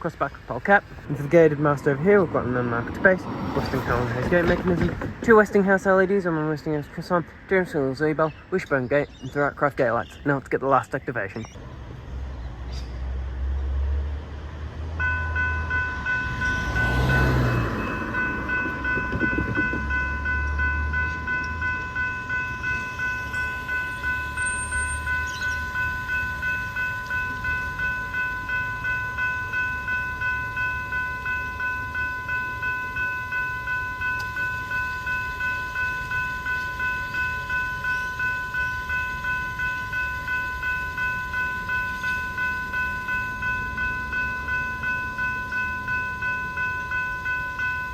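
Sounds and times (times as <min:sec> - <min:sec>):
train passing rumble: 0:00.4 - 0:09.3, 0:11.4 - 0:47.9
level crossing bell ringing: 0:15.0 - 0:47.9.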